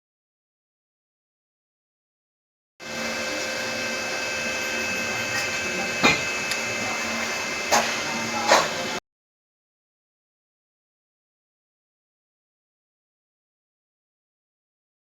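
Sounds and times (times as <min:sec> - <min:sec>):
power tool humming: 0:02.8 - 0:09.0.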